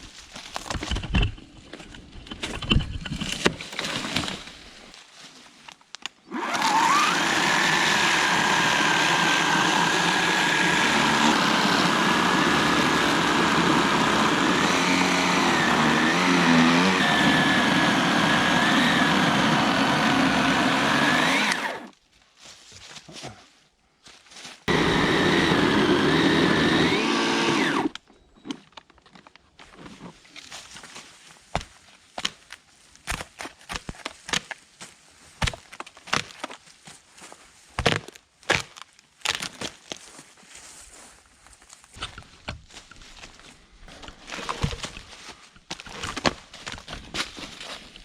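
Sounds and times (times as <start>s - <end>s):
woody knocks and cracks: 0.3s - 4.4s, 31.5s - 34.6s, 35.4s - 36.6s, 37.8s - 40.0s
electric chainsaw running: 6.3s - 21.9s, 24.7s - 28.0s.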